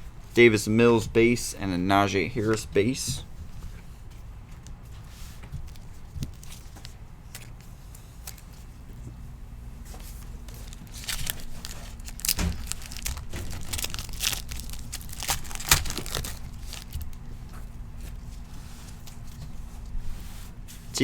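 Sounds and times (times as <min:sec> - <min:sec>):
wrapper tearing and crinkling: 0:10.4 - 0:17.3.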